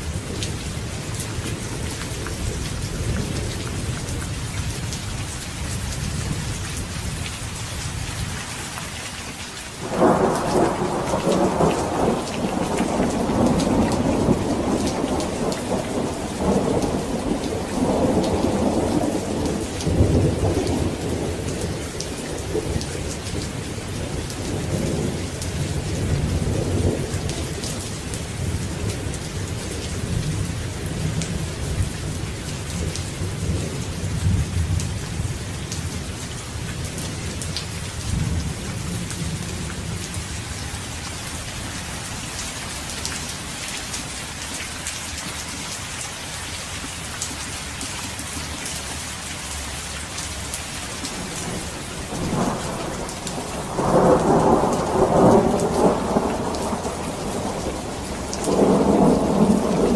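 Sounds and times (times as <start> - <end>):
heavy rain: 0.0 - 59.9
thunderclap: 9.8 - 21.3, 51.2 - 59.9
thunder rumbling: 9.8 - 29.1, 51.0 - 59.9.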